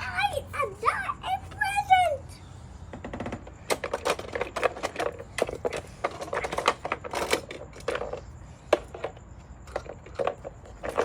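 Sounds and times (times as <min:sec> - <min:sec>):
plastic toys clicking and clattering: 0:02.9 - 0:11.0.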